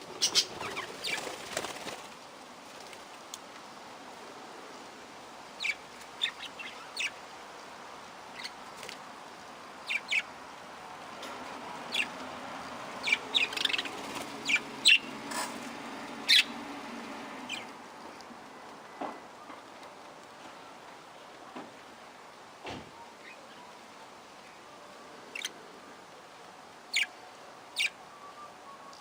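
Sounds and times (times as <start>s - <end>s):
small parrots chirping: 9.8s - 10.3s, 13.0s - 15.6s, 16.3s - 16.6s.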